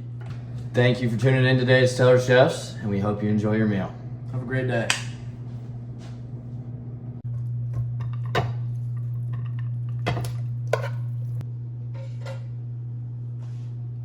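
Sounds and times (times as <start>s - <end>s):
steady low hum: 0.0s - 14.0s
dishes and utensils clinking: 8.0s - 11.3s.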